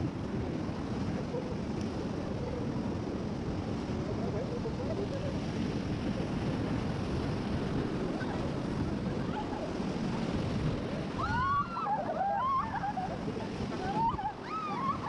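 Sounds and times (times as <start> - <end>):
wind on microphone: 0.0 - 15.0
river rapids rushing: 7.6 - 15.0
shrill yells: 11.2 - 13.1, 14.0 - 15.0.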